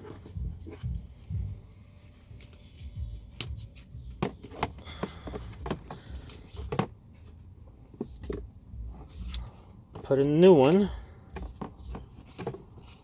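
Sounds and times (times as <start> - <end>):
low handling bumps: 0.0 - 1.7
plastic clicks and scraping: 9.2 - 13.0.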